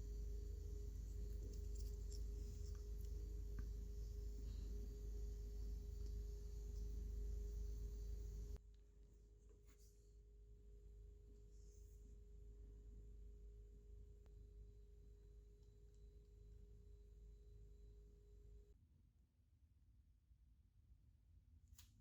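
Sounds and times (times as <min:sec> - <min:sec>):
faint steady tone: 0:00.0 - 0:08.6
low hum: 0:00.0 - 0:09.3.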